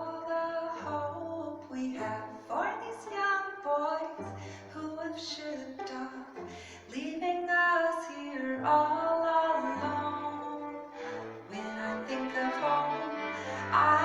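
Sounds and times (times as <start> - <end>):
woman singing: 0.0 - 14.0.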